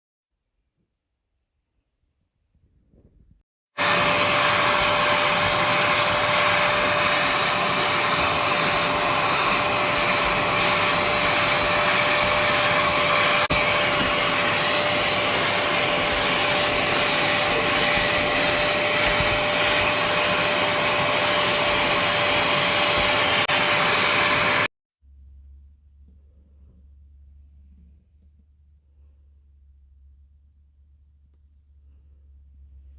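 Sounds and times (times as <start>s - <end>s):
cleaning machine motor whining: 3.8s - 24.7s.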